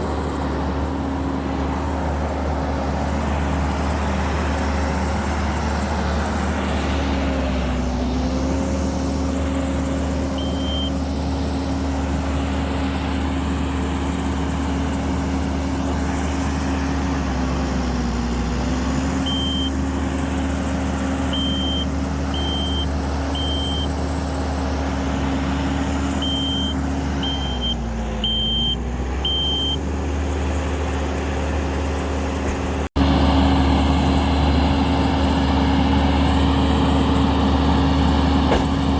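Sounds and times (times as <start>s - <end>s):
diesel engine running: 0.0s - 38.9s
backup alarm beeping: 10.4s - 11.0s, 19.2s - 19.8s, 21.3s - 23.9s, 26.2s - 29.8s.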